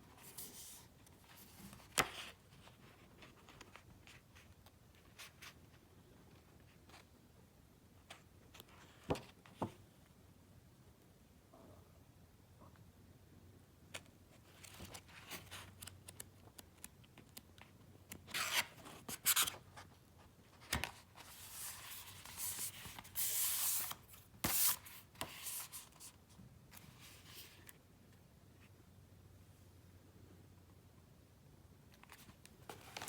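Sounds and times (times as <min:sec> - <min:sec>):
paper rustling and sliding: 0:20.6 - 0:26.2, 0:32.6 - 0:33.0.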